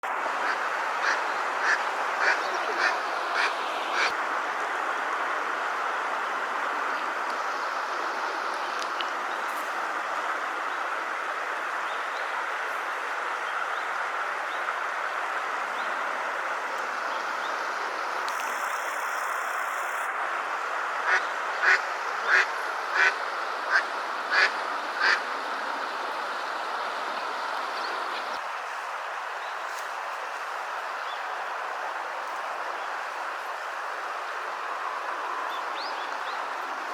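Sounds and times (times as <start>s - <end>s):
steady background hiss: 0.1s - 36.9s
duck quacking: 0.4s - 4.1s, 21.1s - 25.2s.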